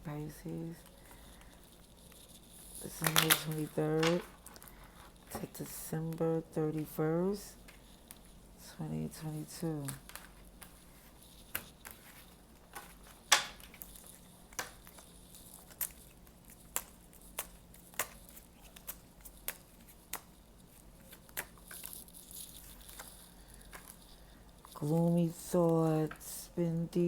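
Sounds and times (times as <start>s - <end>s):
cards shuffled clicking and snapping: 3.0s - 4.7s, 11.4s - 24.0s.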